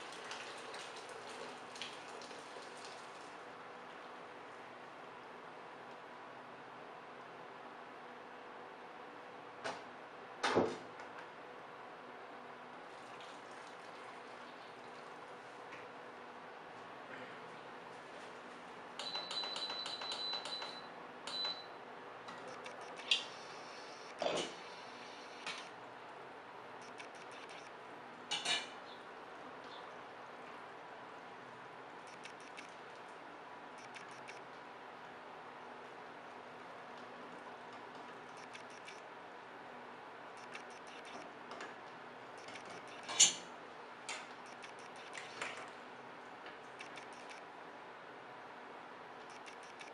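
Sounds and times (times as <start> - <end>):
faint hum: 0.0 - 49.9
utensils tapping and clicking: 19.0 - 21.6, 42.4 - 43.4.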